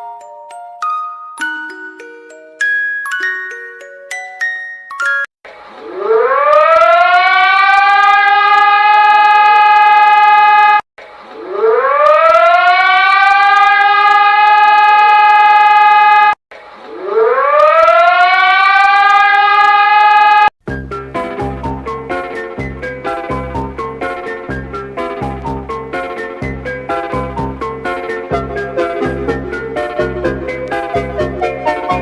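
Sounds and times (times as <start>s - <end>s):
siren winding up: 5.8s - 10.8s, 11.4s - 16.4s, 17.0s - 20.5s.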